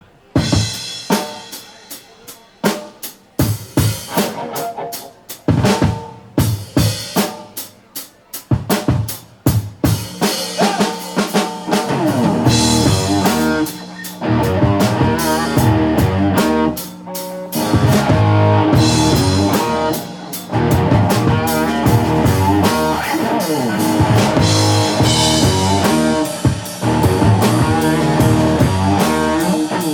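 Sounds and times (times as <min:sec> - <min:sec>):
rock drum kit beat: 0:00.0 - 0:29.9
heavy electric guitar riff: 0:03.9 - 0:05.8, 0:10.2 - 0:29.9.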